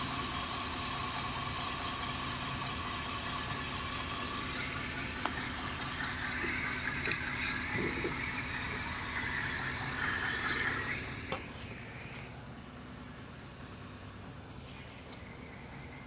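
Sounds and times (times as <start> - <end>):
engine idling: 0.0 - 16.0
faint clicks: 14.7 - 15.4.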